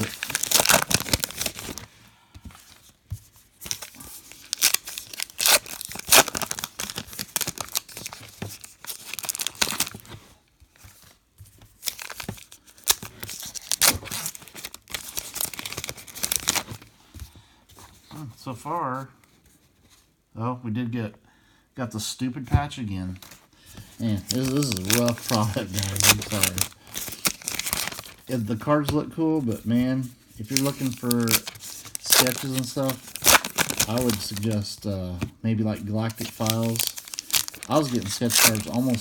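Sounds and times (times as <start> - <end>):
foil wrappers tearing and crinkling: 0.0 - 1.8, 3.6 - 10.0, 11.8 - 16.8, 24.1 - 28.4, 30.5 - 34.6, 36.0 - 39.0.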